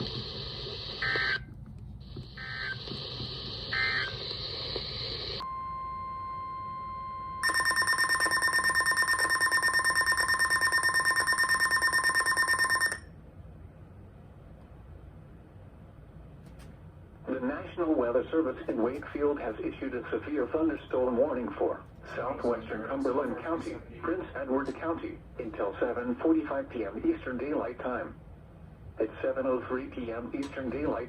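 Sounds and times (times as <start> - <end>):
radio hiss: 0.0 - 5.4
digital data bursts: 2.3 - 5.4.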